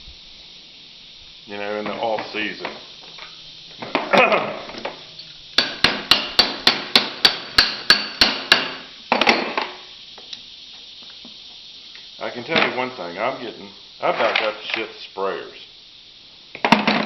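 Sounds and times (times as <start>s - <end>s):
hammer blows on metal: 5.6s - 8.9s.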